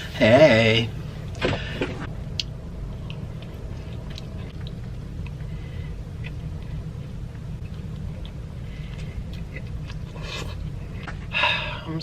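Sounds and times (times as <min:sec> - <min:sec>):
low hum: 0:00.0 - 0:12.0
person chewing food: 0:01.7 - 0:11.2.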